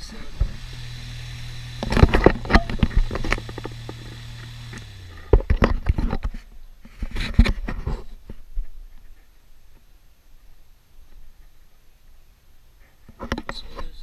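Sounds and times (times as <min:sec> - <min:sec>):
fan motor humming: 0:00.0 - 0:06.2
loud click: 0:01.8 - 0:05.9.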